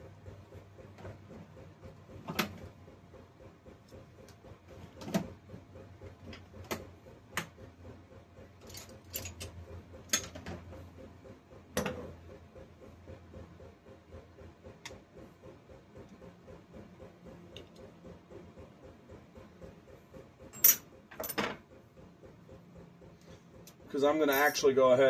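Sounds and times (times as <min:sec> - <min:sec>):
metal parts clicking and knocking: 0:08.6 - 0:10.7, 0:20.5 - 0:21.7.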